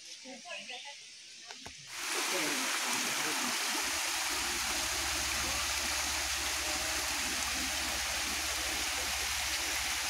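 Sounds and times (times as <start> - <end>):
rushing stream water: 1.9 - 10.0.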